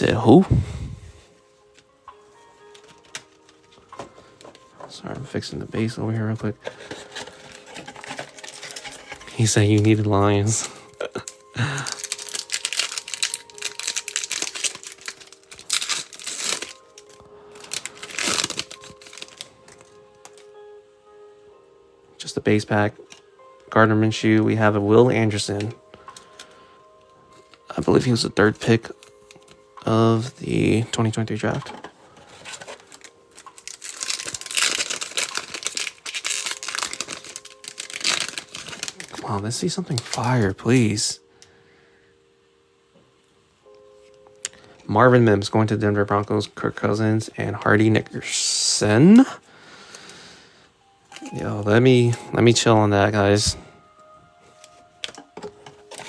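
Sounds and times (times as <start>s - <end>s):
wrapper crinkling and tearing: 2.7s - 4.0s, 6.6s - 20.5s, 31.4s - 41.0s, 54.6s - 56.0s.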